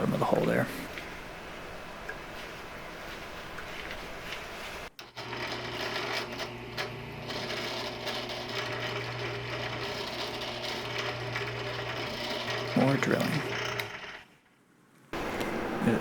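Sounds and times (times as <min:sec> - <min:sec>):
drill press drilling into metal: 0:05.0 - 0:14.2.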